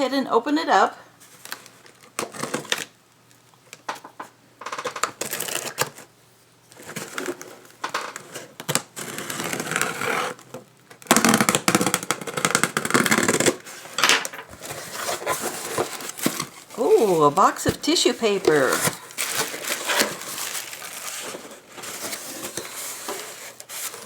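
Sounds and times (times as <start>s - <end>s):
cardboard clicks and scrapes: 8.2s - 24.0s
paper rustling: 13.3s - 24.0s.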